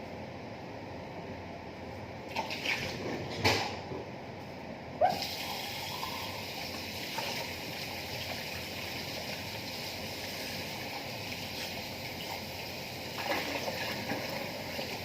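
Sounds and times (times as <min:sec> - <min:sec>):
water running: 0:05.1 - 0:15.0.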